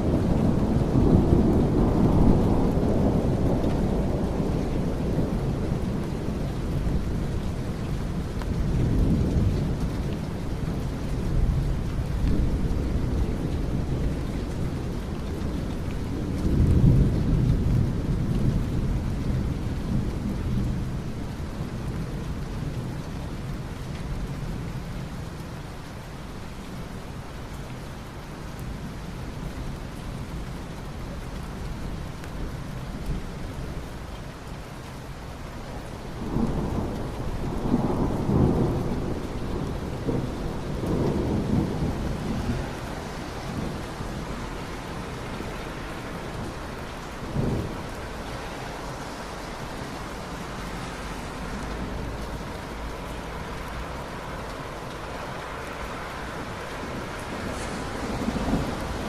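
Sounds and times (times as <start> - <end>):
steady rain: 0.0 - 59.0
thunder rolling: 36.1 - 55.4, 56.3 - 59.0
sharp thunderclap: 36.3 - 44.2, 56.9 - 59.0.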